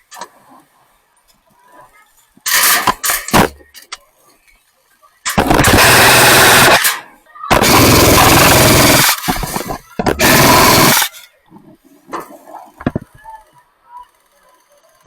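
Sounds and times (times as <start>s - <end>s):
airsoft gun automatic fire: 5.3s - 11.2s.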